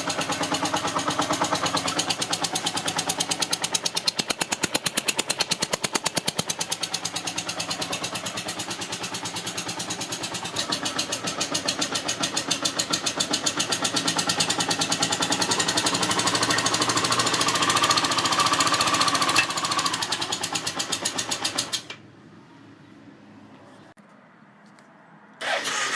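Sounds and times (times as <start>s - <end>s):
motorcycle engine pulsing: 0.0s - 21.9s.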